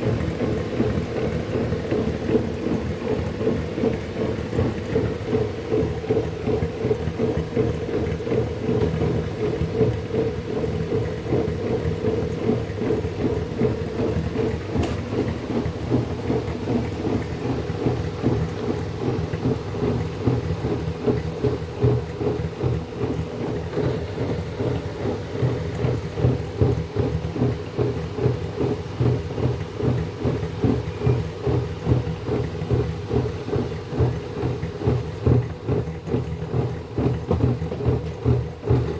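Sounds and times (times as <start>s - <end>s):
washing machine drum churning: 0.0s - 38.9s.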